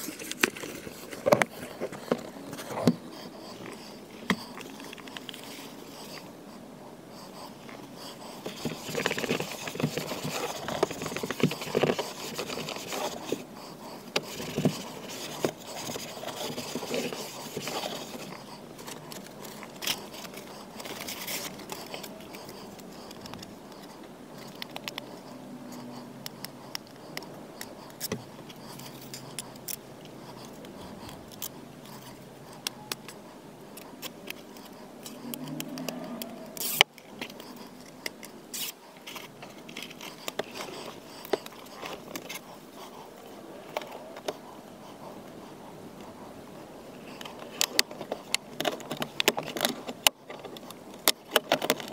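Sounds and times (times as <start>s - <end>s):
trim pieces clicking and scraping: 14.0s - 42.5s, 47.1s - 51.9s.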